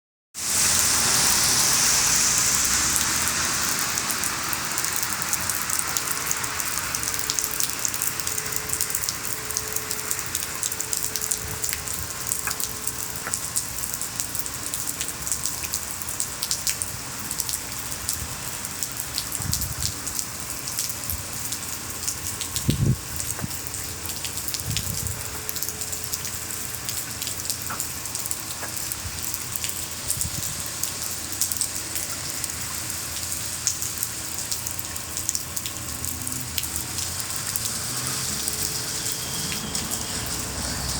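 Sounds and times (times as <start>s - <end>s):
rain falling: 0.4s - 40.9s.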